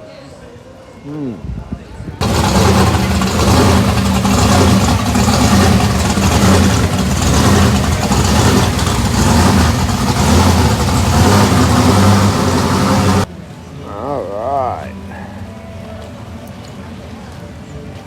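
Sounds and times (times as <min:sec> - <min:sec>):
car engine running: 0:02.2 - 0:13.3.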